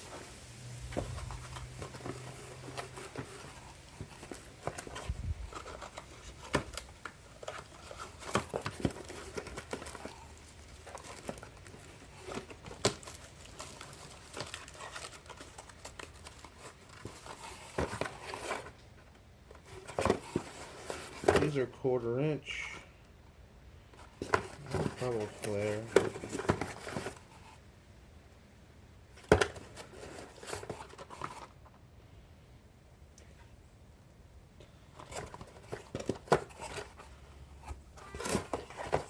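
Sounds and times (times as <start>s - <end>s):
packaging crinkling: 0.0s - 18.7s.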